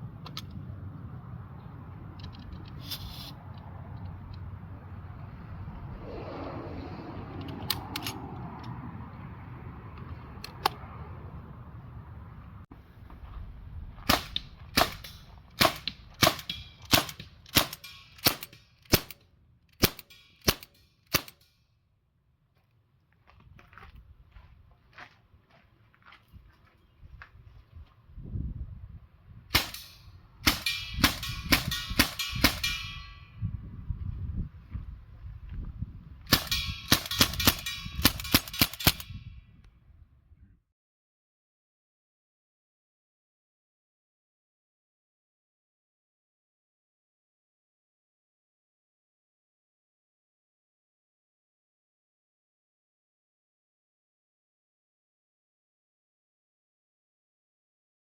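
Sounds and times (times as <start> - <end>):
low wind rumble: 0.0 - 17.4, 26.3 - 40.7
pellet rifle shots with metallic ringing: 14.2 - 19.2, 29.6 - 33.4, 36.3 - 39.2.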